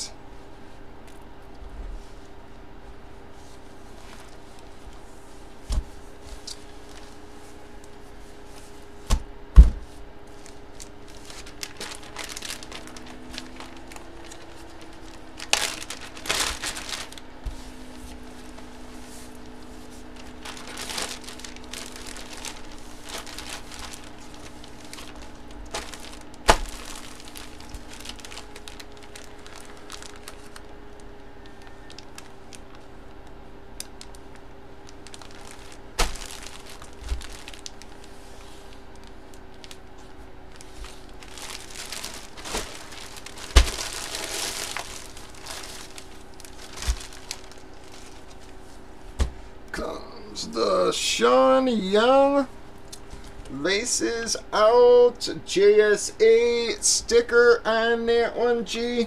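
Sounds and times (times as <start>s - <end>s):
faint steady hum: 0.0s - 59.0s
plastic packaging crinkling: 4.0s - 49.7s.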